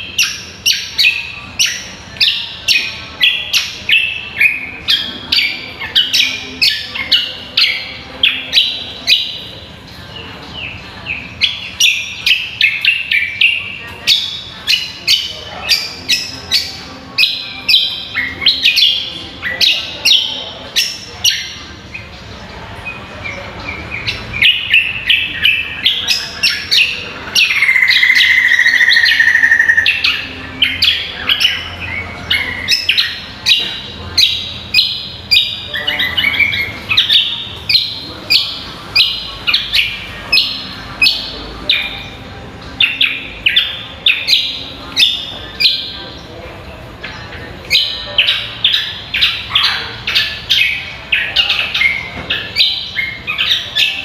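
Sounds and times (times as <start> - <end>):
bird sharp chirps: 24.0 - 42.2
bird loud held call: 24.4 - 31.7.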